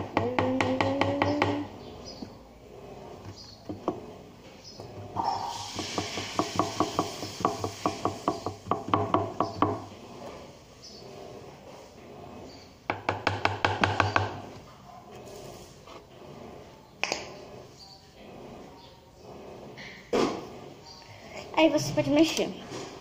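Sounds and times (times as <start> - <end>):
utensil clacking against bowl: 0.0 - 2.4, 12.9 - 14.5.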